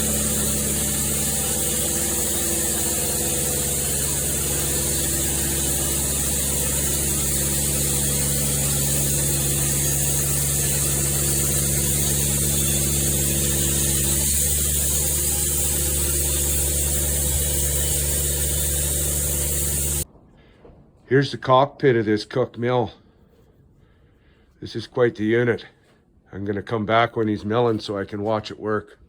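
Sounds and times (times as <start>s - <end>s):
machine humming with loud hiss: 0.0s - 20.0s.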